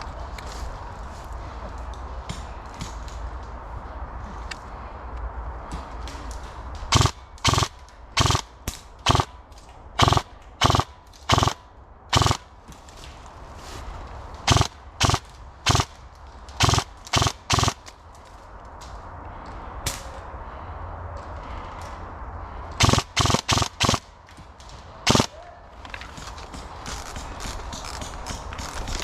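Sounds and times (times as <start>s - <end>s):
airsoft gun shots: 6.9s - 9.3s, 10.0s - 12.5s, 14.5s - 16.0s, 16.6s - 17.8s, 22.8s - 24.0s, 25.1s - 25.4s.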